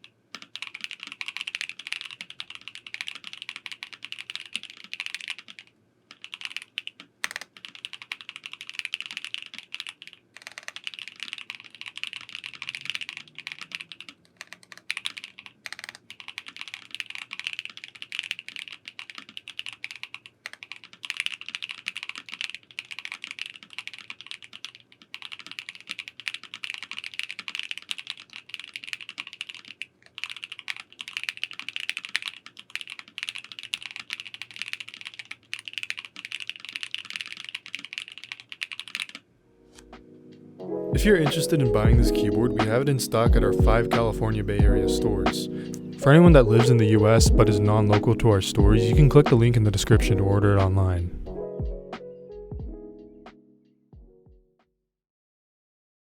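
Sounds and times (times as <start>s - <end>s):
mechanical keyboard typing: 0.0s - 39.2s, 41.3s - 51.0s.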